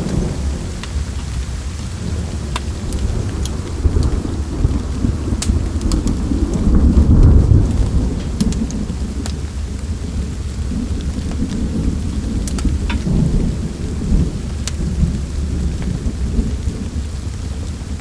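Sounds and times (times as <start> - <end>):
burning wood popping: 0.0 - 10.0, 10.9 - 13.7
faint hiss of rain: 0.0 - 18.0
fireplace low rumble: 0.0 - 18.0.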